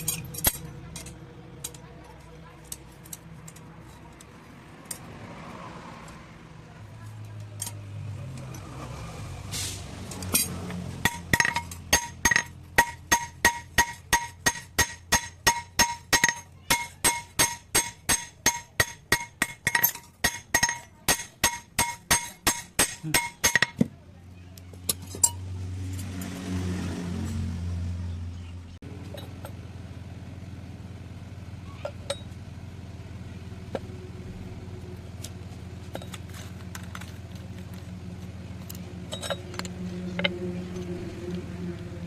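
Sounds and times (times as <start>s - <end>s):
hammer striking blade on anvil: 10.2s - 23.9s.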